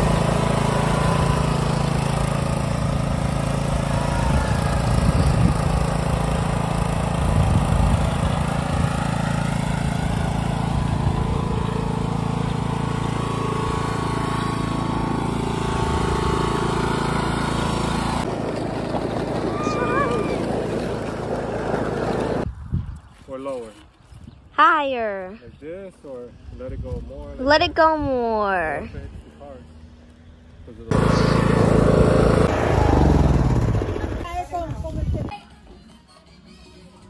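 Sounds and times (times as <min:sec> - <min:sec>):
lawn mower engine running: 0:00.0 - 0:22.4, 0:30.9 - 0:35.3.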